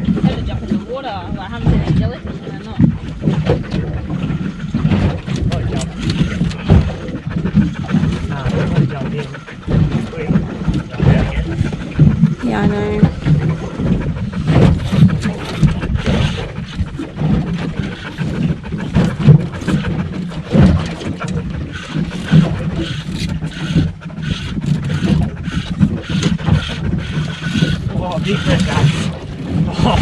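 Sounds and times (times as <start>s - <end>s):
water slapping against boat hull: 0.0s - 30.0s
wind buffeting microphone: 0.0s - 30.0s
knocks and thumps: 2.8s - 22.8s.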